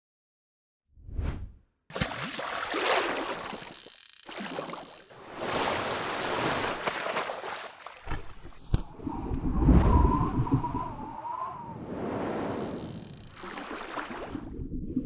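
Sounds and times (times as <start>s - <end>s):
water rushing and splashing: 1.9s - 8.6s.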